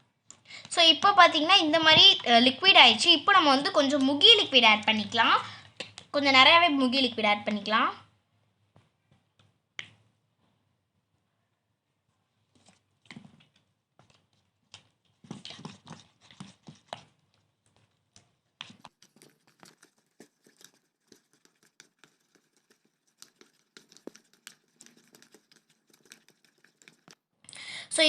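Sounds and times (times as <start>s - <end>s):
wet slime squishing while stirred: 0.1s - 7.2s, 12.3s - 27.3s.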